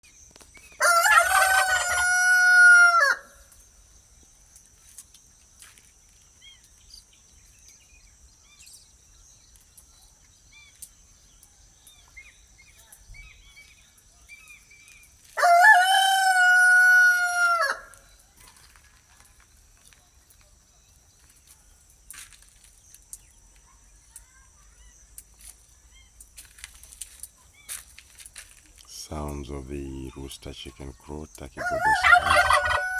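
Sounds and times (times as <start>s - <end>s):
rooster crowing: 0.8s - 3.4s, 15.3s - 18.1s, 31.6s - 32.9s
faint bird chirps: 6.4s - 15.2s.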